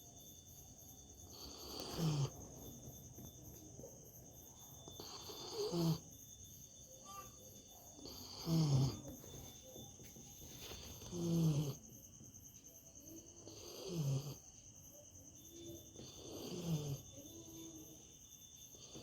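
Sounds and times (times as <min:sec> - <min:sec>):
dog snoring: 0:01.0 - 0:03.3, 0:04.7 - 0:06.2, 0:08.0 - 0:09.5, 0:10.6 - 0:11.9, 0:13.3 - 0:14.5, 0:15.8 - 0:17.2, 0:18.7 - 0:19.0.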